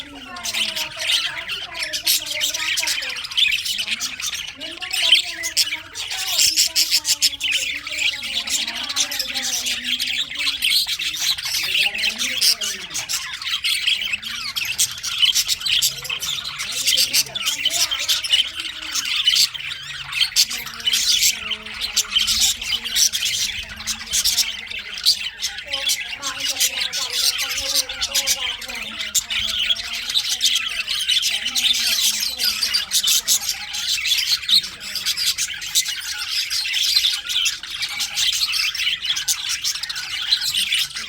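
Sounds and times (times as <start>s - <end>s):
budgerigars chattering: 0.0s - 41.0s.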